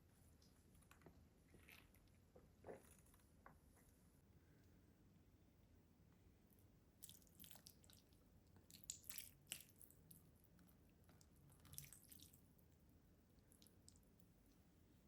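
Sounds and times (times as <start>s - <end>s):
wet chewing and mouth smacks: 7.0s - 12.4s.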